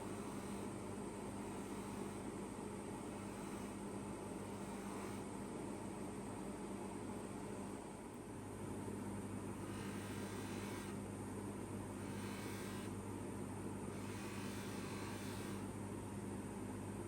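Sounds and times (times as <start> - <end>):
polishing motor humming: 12.0 - 12.9, 13.9 - 15.7.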